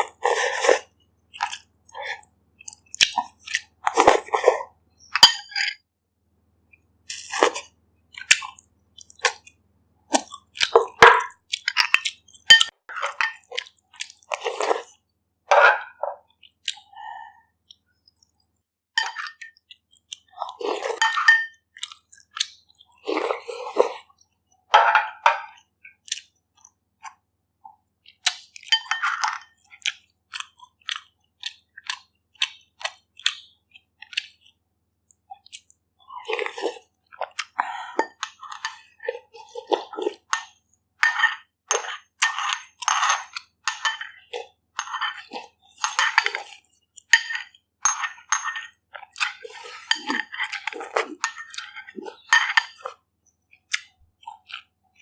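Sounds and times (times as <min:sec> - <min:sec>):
utensils clinking against bowl: 0:10.9 - 0:13.6, 0:20.6 - 0:21.6, 0:38.0 - 0:53.0
chewing and crunching: 0:25.5 - 0:55.0.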